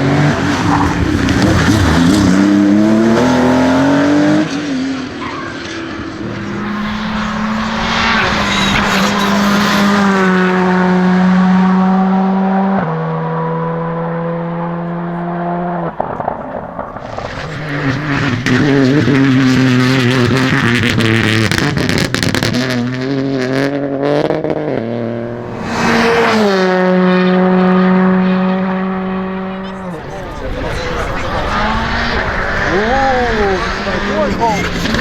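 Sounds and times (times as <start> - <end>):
car passing by: 0.0 - 12.9, 25.2 - 35.0
rally car engines at full throttle: 0.0 - 35.0.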